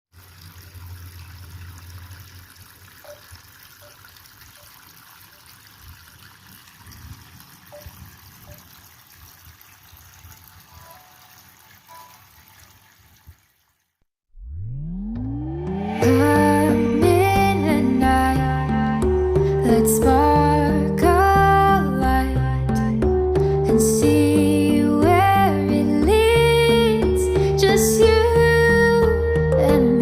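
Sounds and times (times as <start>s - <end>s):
water trickling from small waterfall: 0.1s - 14.0s.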